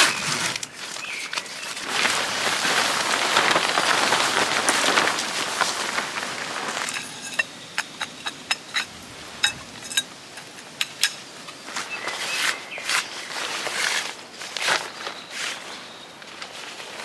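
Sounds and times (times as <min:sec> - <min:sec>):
tent gear rustling: 0:00.0 - 0:17.0
sharp clicks and light clinks: 0:06.8 - 0:11.2.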